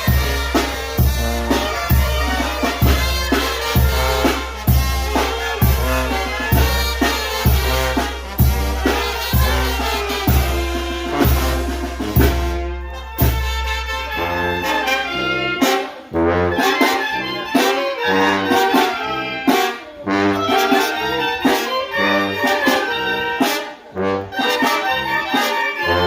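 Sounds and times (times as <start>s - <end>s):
drum strikes: 0.0s - 13.9s
brass band playing: 0.0s - 26.0s.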